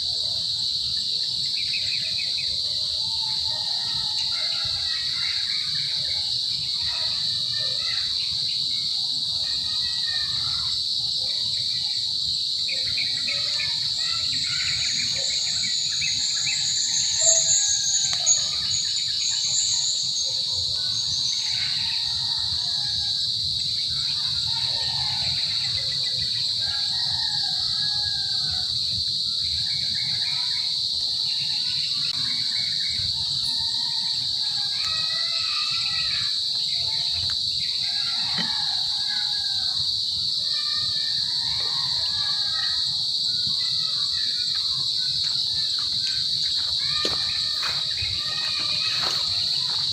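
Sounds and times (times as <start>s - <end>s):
insects buzzing chorus: 0.0s - 49.9s
loud high insect trill: 0.0s - 49.9s.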